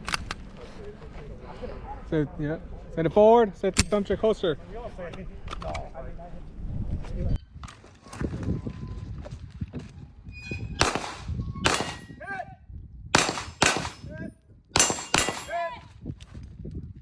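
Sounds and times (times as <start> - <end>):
pistol shots with echo: 10.8 - 12.2, 13.2 - 14.1, 14.8 - 15.6.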